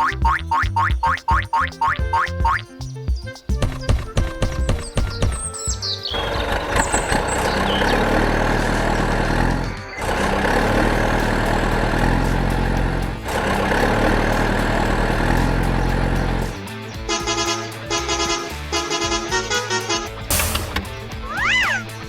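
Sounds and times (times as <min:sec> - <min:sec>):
heavy vehicle engine running: 0:03.6 - 0:22.0.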